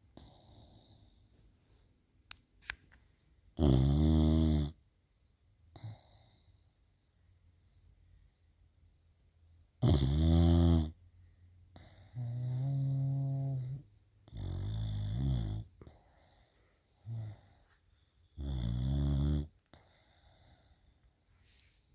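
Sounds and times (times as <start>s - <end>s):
dog snoring: 0.1s - 1.4s, 3.6s - 4.8s, 5.7s - 7.3s, 9.8s - 11.0s, 11.7s - 21.6s.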